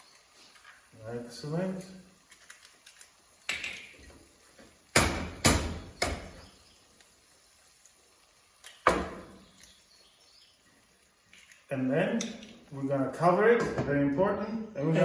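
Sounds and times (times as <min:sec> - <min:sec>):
knocks on hard kitchenware: 0:05.0 - 0:06.3.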